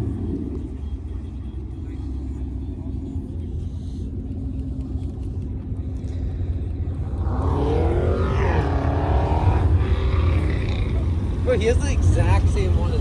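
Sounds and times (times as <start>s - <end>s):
car engines rumbling: 0.0s - 13.0s
car passing by: 7.0s - 13.0s.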